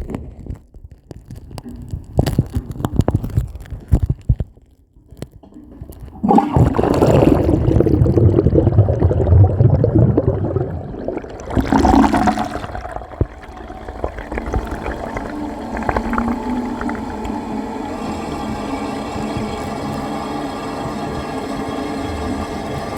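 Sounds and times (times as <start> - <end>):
toilet flushing underwater: 5.6 - 22.9
water rushing as bowl refills: 6.1 - 22.9.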